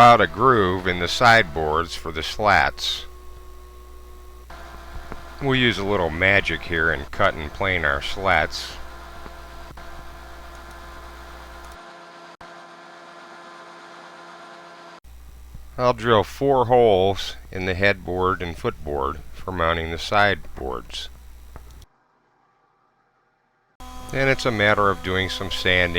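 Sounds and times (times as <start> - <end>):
electrical mains hum: 0.0 - 11.8, 15.0 - 21.9, 23.8 - 25.9.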